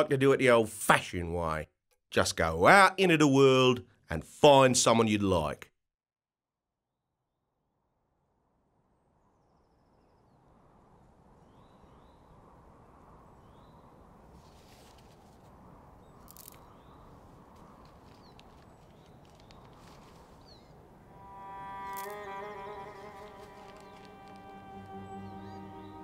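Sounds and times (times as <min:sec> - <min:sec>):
brief crackles: 0:17.5 - 0:20.7, 0:21.8 - 0:24.7.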